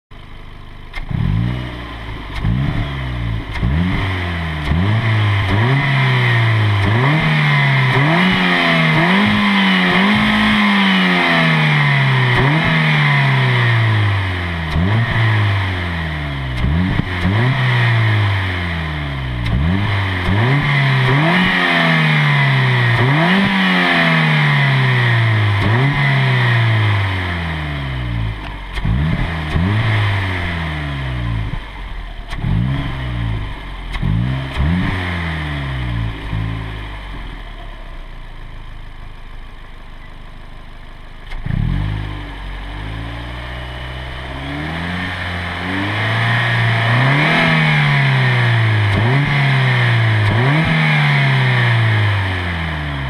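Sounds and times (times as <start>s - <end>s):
car engine revving: 0.8s - 53.0s.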